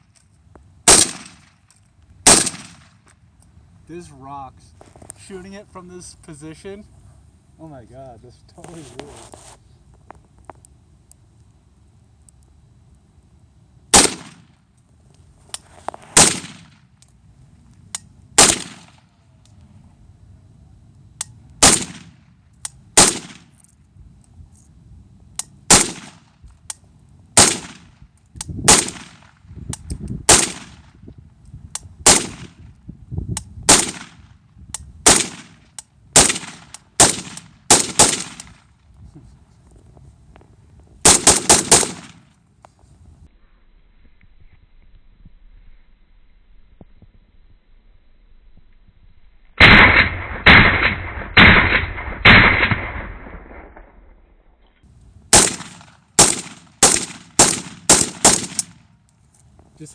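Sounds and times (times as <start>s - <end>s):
rifle gunshots: 0.8s - 1.6s, 2.2s - 3.0s, 13.9s - 14.5s, 16.2s - 16.8s, 18.4s - 19.1s, 21.6s - 22.2s, 23.0s - 23.5s, 25.7s - 26.2s, 27.4s - 27.9s, 28.7s - 29.4s, 30.3s - 30.8s, 32.0s - 32.6s, 33.7s - 34.2s, 35.0s - 38.6s, 41.0s - 42.2s, 49.6s - 54.0s, 55.3s - 59.0s.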